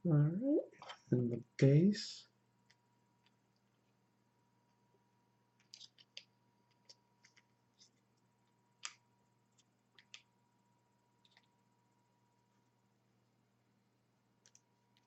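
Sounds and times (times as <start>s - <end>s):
small plastic parts clicking: 5.6s - 7.5s, 9.6s - 10.3s, 14.4s - 15.0s.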